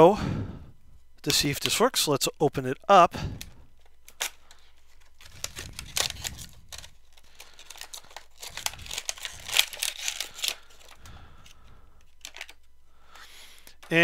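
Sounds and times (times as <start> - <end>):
packaging crinkling and tearing: 3.4 - 12.7.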